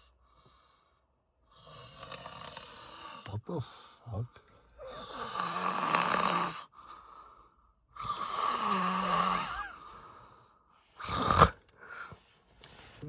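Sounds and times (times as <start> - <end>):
man snoring heavily: 1.5 - 3.6, 4.8 - 12.1.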